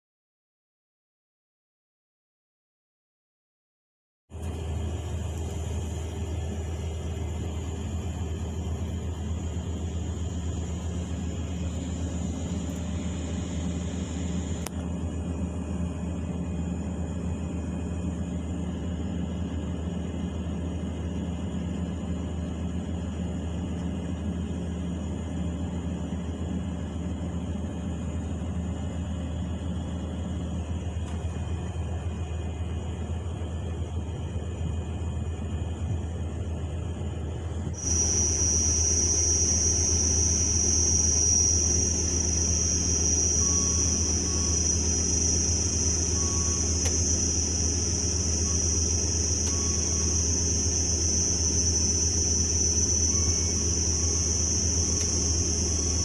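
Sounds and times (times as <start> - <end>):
excavator diesel engine drone: 4.3 - 56.0
high-pitched hiss: 37.8 - 56.0.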